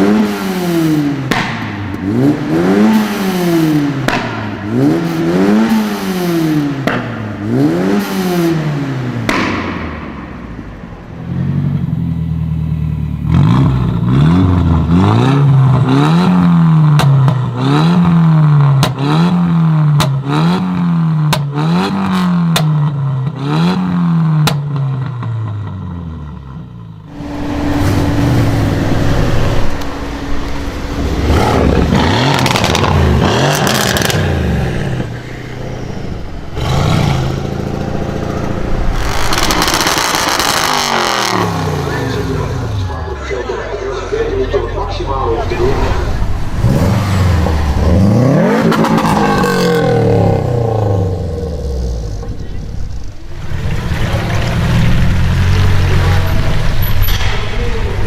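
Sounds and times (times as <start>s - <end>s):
another car revving: 0.0s - 58.0s
car engine revving: 0.0s - 58.0s
exhaust pops and crackles: 1.2s - 2.2s, 4.0s - 4.8s, 6.8s - 7.4s, 15.7s - 17.6s, 18.6s - 19.2s, 19.9s - 23.4s, 24.4s - 25.8s, 29.3s - 35.2s, 36.6s - 42.8s, 48.5s - 58.0s.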